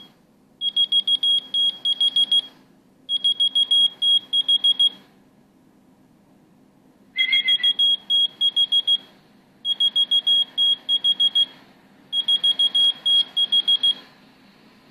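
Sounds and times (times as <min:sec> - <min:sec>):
high-pitched keychain beeps: 0:07.2 - 0:09.0.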